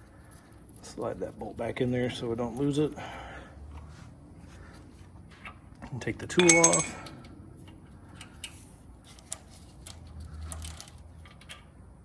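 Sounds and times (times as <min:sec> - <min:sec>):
metal tools clinking: 0:06.4 - 0:07.2.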